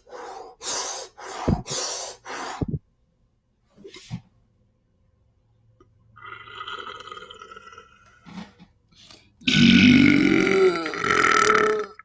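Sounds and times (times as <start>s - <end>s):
person belching: 6.2s - 8.0s, 9.4s - 12.0s.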